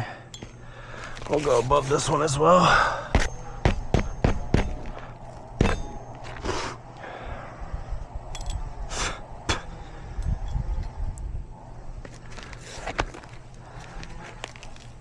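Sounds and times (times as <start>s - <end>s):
knocks on roof shingles: 3.2s - 6.4s.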